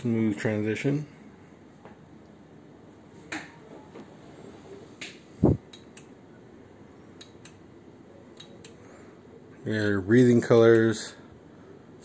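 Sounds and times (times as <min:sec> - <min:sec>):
light sharp clicks: 0:08.4 - 0:08.8.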